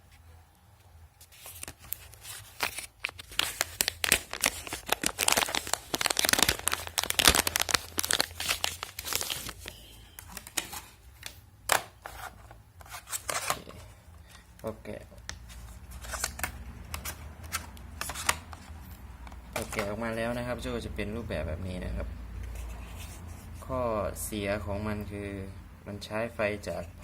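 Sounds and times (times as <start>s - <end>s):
packaging tearing and crinkling: 1.3s - 13.6s, 15.9s - 18.6s.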